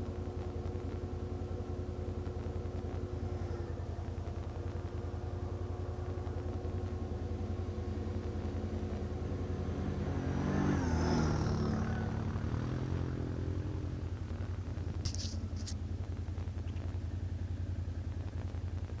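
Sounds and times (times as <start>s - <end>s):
engine idling: 0.0s - 10.0s, 11.4s - 19.0s
vehicle engine passing: 6.2s - 15.8s.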